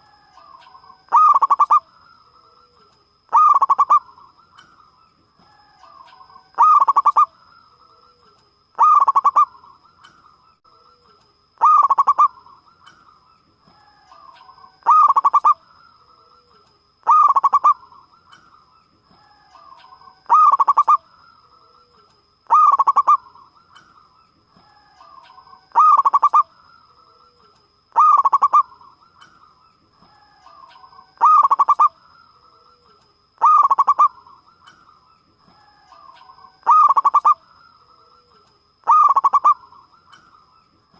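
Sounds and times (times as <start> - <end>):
dove cooing: 0.2 - 1.9, 2.6 - 4.4, 5.6 - 7.4, 8.8 - 9.7, 11.6 - 12.6, 13.9 - 15.6, 16.4 - 18.1, 19.4 - 21.0, 21.9 - 23.6, 24.6 - 26.5, 27.3 - 29.0, 30.0 - 34.5, 35.5 - 37.4, 38.0 - 40.2.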